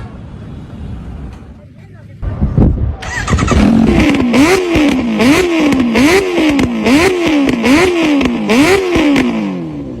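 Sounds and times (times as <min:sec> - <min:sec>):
vehicle engine revving: 0:03.0 - 0:10.0.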